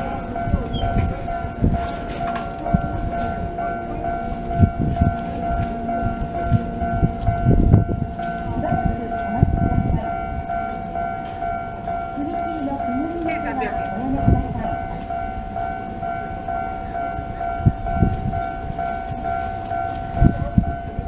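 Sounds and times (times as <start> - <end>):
train wheels clunking over rail joints: 0.0 - 15.2
level crossing alarm ringing: 0.0 - 21.0.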